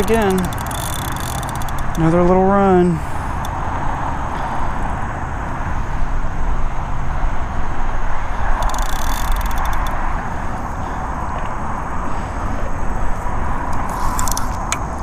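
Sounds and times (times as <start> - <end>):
fishing reel drag ticking: 0.0 - 3.6, 8.5 - 10.1, 13.8 - 14.6
steady rushing noise: 0.0 - 15.0.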